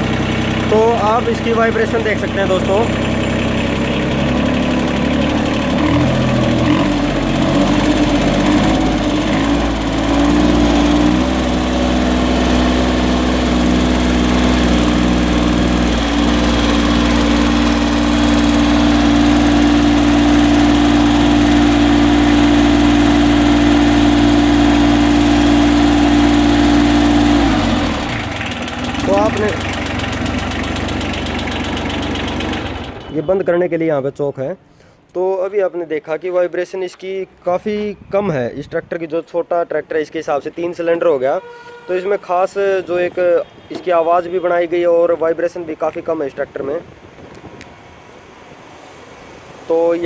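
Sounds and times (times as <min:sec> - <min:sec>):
diesel tractor engine running: 0:00.0 - 0:34.2.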